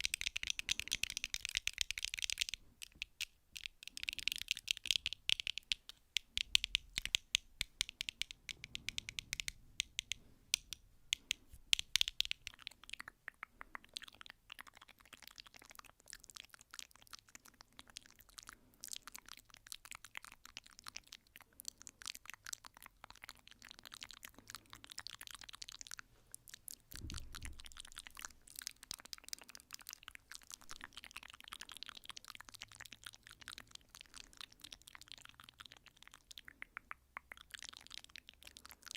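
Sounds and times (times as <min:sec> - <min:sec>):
tapping and clicking: 0:00.0 - 0:14.1.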